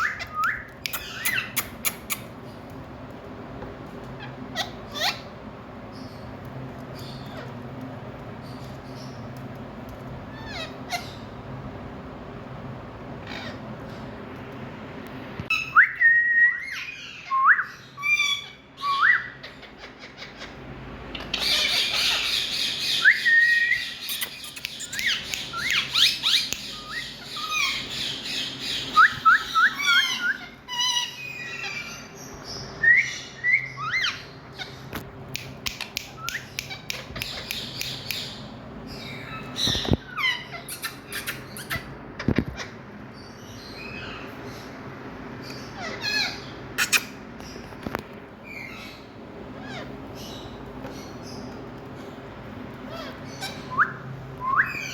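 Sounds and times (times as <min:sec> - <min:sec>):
parakeet harsh rapid chattering: 0:00.0 - 0:02.5, 0:23.8 - 0:28.9, 0:35.4 - 0:38.5, 0:39.1 - 0:42.8, 0:45.7 - 0:47.2
parakeet whistles and squawks: 0:00.0 - 0:02.6, 0:04.1 - 0:06.3, 0:10.2 - 0:11.4, 0:13.2 - 0:14.1, 0:15.5 - 0:51.6, 0:52.8 - 0:54.9.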